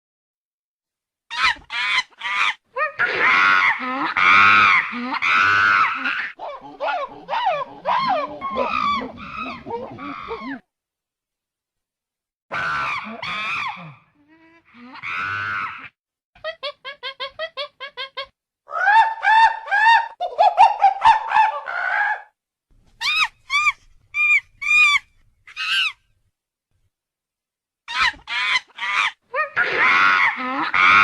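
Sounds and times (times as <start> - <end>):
monkey calling: 4.4 - 10.6, 23.0 - 26.0
monkey squeaking: 23.0 - 26.0.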